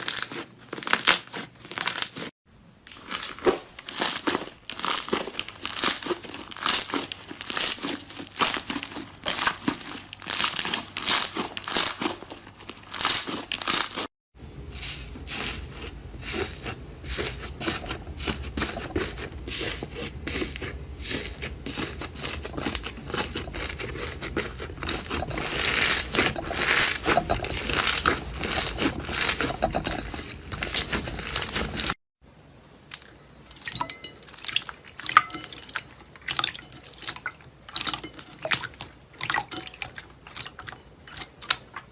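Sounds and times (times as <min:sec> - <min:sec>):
crinkling and crackling: 0:00.0 - 0:32.0.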